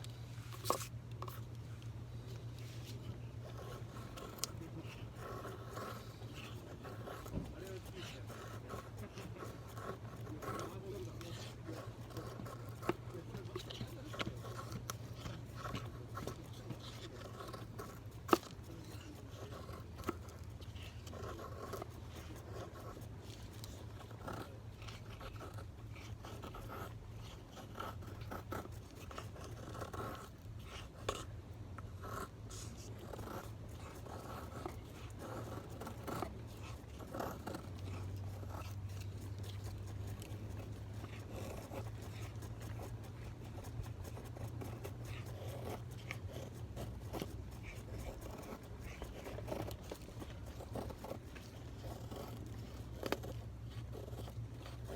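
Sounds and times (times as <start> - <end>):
scraping and handling strokes: 0.0 - 54.9
steady low hum: 0.0 - 54.9.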